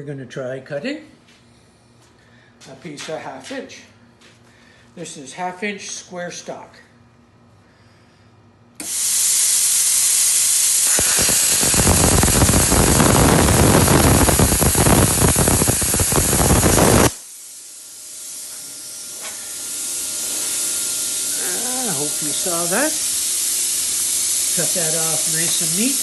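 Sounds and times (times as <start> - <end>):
air hissing: 8.8 - 26.0
plasma cutter arc crackling: 8.8 - 26.0.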